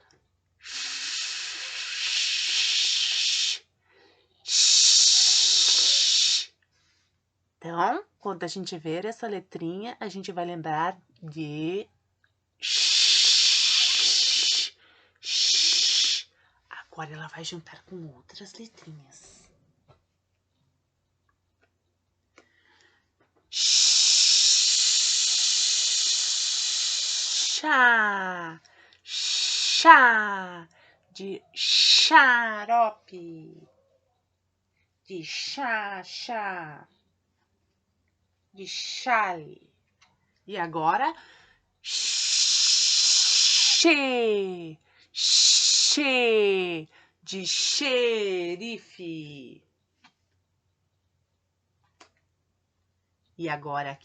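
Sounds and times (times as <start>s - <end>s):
woman hissing shhh: 0.6s - 6.6s, 12.6s - 16.4s, 23.5s - 27.8s, 28.8s - 30.0s, 31.6s - 32.1s, 41.8s - 43.8s, 45.1s - 46.0s.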